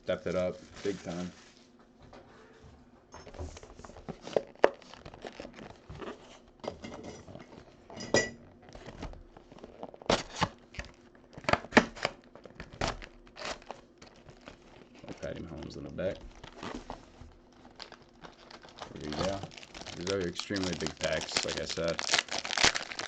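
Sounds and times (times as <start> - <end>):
wrapped packs crinkling: 0.0 - 1.5, 4.0 - 6.5, 8.6 - 23.0.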